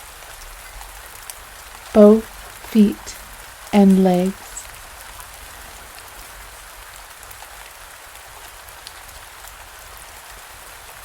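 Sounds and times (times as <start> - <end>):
patter of individual raindrops: 0.0 - 2.6, 5.0 - 11.0
steady rain falling: 0.0 - 11.0.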